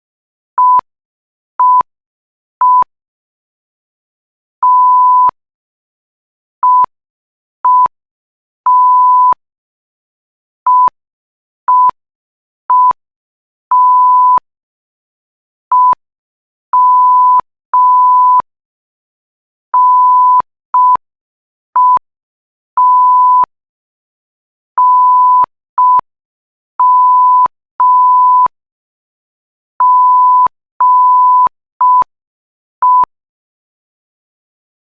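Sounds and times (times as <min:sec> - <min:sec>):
morse code beeps: 0:00.6 - 0:00.8, 0:01.6 - 0:01.8, 0:02.6 - 0:02.9, 0:08.7 - 0:09.4, 0:13.7 - 0:14.4, 0:15.7 - 0:16.0, 0:16.8 - 0:18.4, 0:19.8 - 0:21.0, 0:21.8 - 0:22.0, 0:22.8 - 0:23.5, 0:24.8 - 0:26.0, 0:26.8 - 0:28.5, 0:29.8 - 0:32.1, 0:32.8 - 0:33.1.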